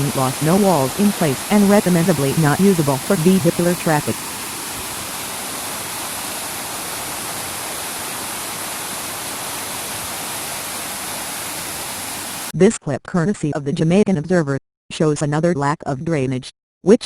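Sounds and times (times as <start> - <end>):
floodwater rushing: 0.0 - 12.5.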